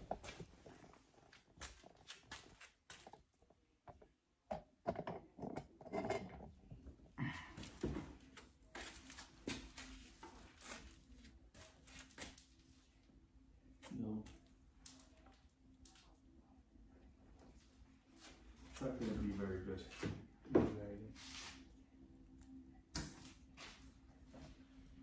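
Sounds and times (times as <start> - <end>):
hands and tools clicking and knocking: 3.9 - 6.5.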